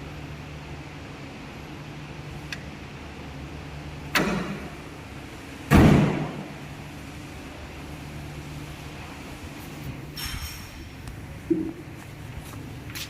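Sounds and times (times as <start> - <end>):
door slamming: 5.7 - 6.4.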